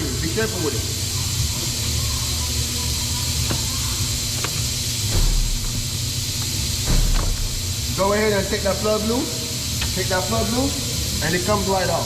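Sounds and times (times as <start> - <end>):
low thump: 5.1 - 6.0, 6.8 - 7.8.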